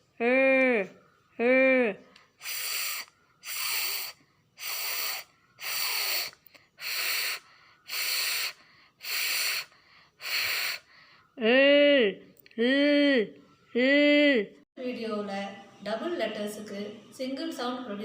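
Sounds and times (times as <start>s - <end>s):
woman making hissing sound: 2.4s - 11.7s.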